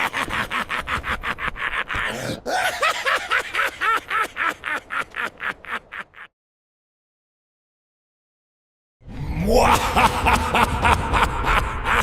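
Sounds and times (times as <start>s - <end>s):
cartoon villain evil laugh: 0.0s - 6.3s, 9.4s - 12.0s.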